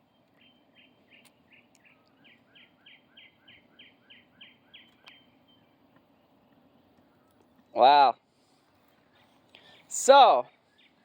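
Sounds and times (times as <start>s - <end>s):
bird chirping: 0.0s - 8.0s, 8.8s - 11.0s.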